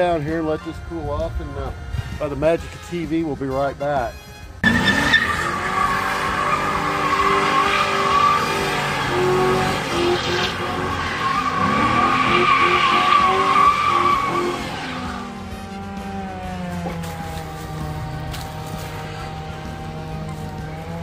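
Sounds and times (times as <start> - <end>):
car sound effects: 4.6 - 21.0
music with short notes: 15.1 - 21.0.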